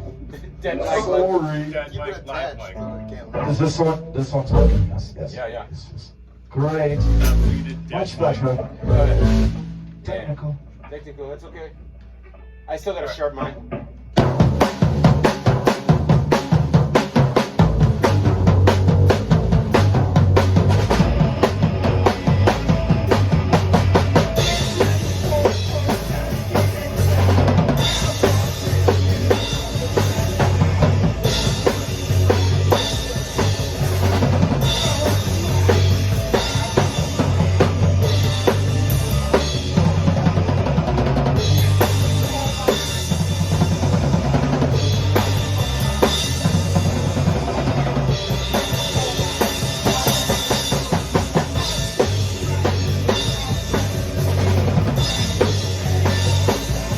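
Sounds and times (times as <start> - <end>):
low bass part: 2.8 - 5.2, 6.6 - 10.4
band playing a song: 7.0 - 10.4, 14.1 - 56.9
drum kit beat: 7.0 - 10.4, 13.6 - 56.9.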